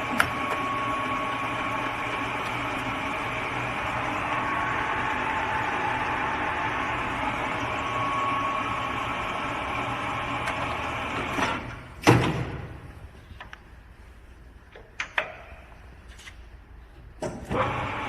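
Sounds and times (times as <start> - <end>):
lathe running: 0.0 - 11.4.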